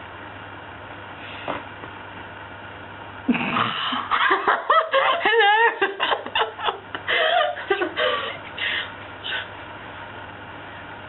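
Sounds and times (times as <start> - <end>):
people laughing: 3.8 - 8.6.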